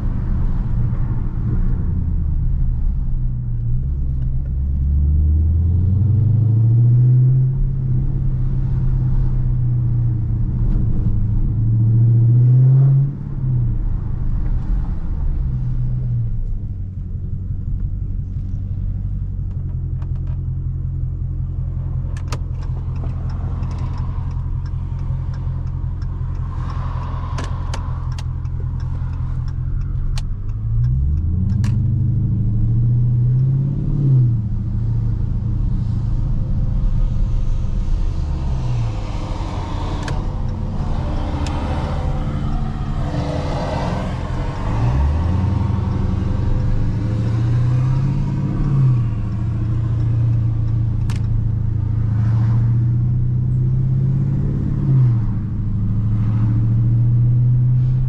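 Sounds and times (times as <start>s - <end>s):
car engine revving: 0.0s - 58.0s
sharp clicks: 22.1s - 31.9s.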